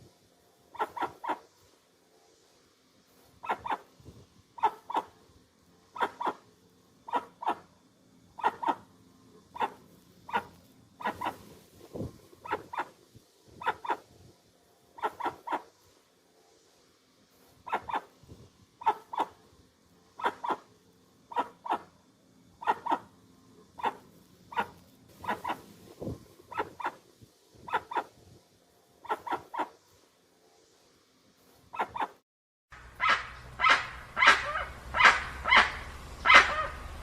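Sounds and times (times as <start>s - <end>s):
bird bark-like calls: 0.7s - 1.5s, 3.4s - 3.9s, 4.6s - 5.2s, 5.9s - 6.4s, 7.0s - 7.7s, 8.4s - 11.5s, 12.4s - 13.0s, 13.6s - 14.1s, 15.0s - 15.7s, 17.6s - 18.2s, 18.8s - 19.4s, 20.2s - 20.7s, 21.3s - 21.9s, 22.6s - 23.1s, 23.7s - 25.7s, 26.5s - 27.0s, 27.6s - 28.1s, 29.0s - 29.8s, 31.7s - 32.2s, 32.8s - 37.0s.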